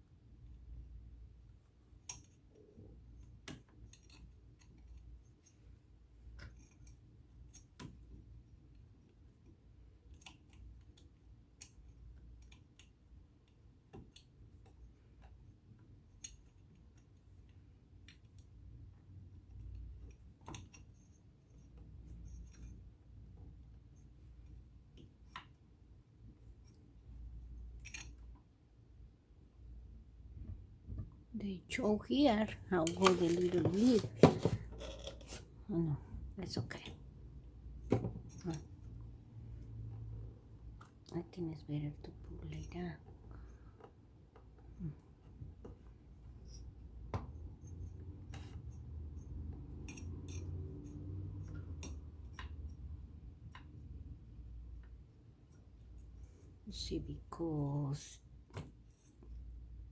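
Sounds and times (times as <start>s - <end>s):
low steady hum: 0.0s - 59.9s
small metal parts clicking: 2.0s - 2.5s, 3.2s - 8.0s, 27.7s - 28.4s, 48.7s - 52.9s.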